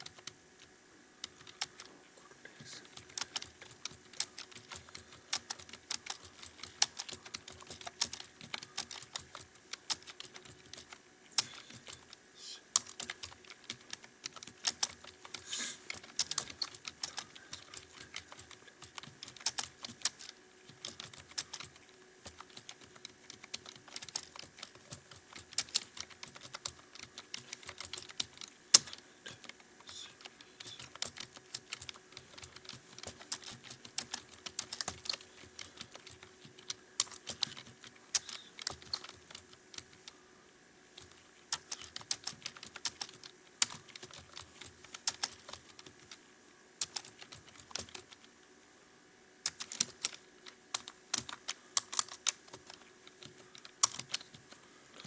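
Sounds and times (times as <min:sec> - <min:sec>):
keyboard typing: 0:00.0 - 0:00.4, 0:01.2 - 0:01.9, 0:02.6 - 0:40.1, 0:40.9 - 0:46.2, 0:46.8 - 0:48.3, 0:49.4 - 0:55.0.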